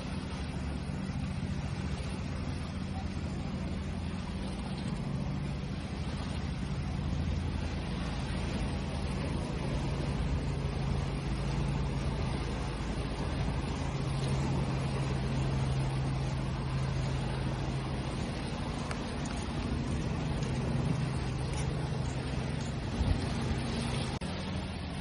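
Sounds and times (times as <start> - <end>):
low steady hum: 0.0 - 25.0
sea waves rushing: 0.0 - 25.0.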